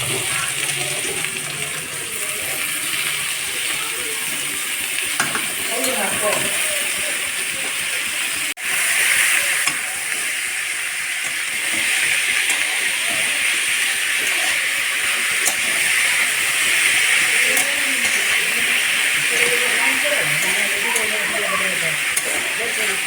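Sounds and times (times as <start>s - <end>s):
vegetables sizzling in a pan: 0.0s - 23.0s.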